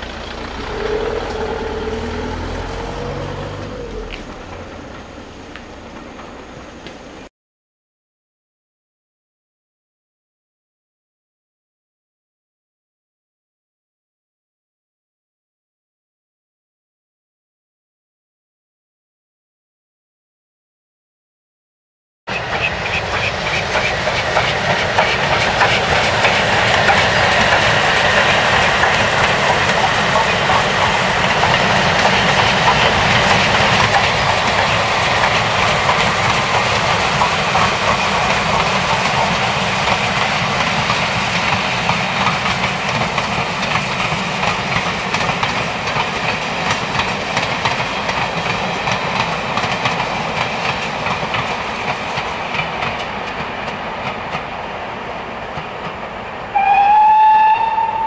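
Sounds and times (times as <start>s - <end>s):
wheels clattering over rail joints: 0.0s - 7.2s, 22.4s - 54.5s
train rumbling: 0.0s - 7.3s, 22.3s - 58.0s.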